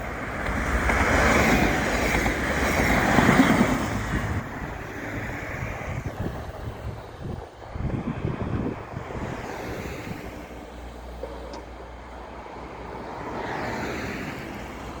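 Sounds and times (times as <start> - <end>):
wind buffeting microphone: 0.0 - 10.8
diesel train engine drone: 0.0 - 15.0.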